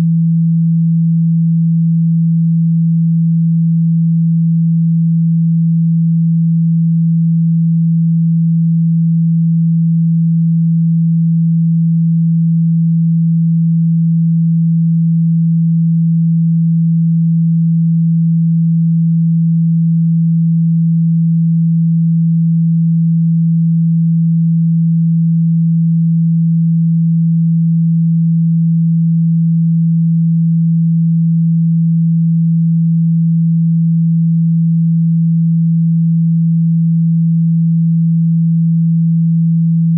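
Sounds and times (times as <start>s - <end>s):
low pure tone: 0.0s - 39.9s.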